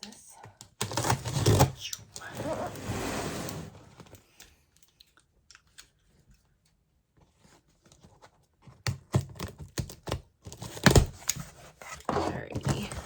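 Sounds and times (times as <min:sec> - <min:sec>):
blade scraping cardboard: 0:00.9 - 0:04.0
clicks and rustles of handling: 0:03.9 - 0:13.0.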